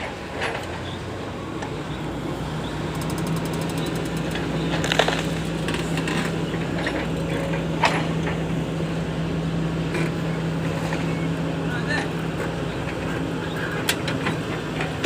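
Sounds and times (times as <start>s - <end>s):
excavator diesel engine: 0.0s - 15.0s
quick rattle: 2.9s - 6.3s.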